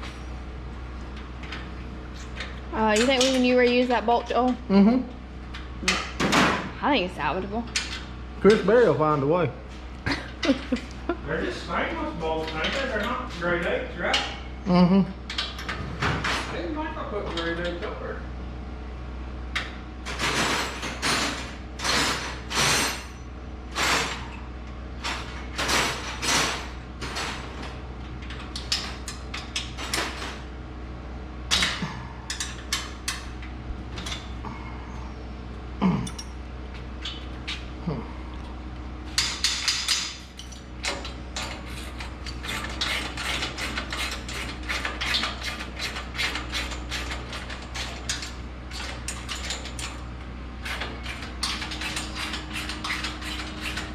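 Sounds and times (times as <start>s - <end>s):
steady low hum: 0.0s - 53.9s
metallic clanks and scrapes: 20.1s - 24.4s, 39.1s - 53.9s.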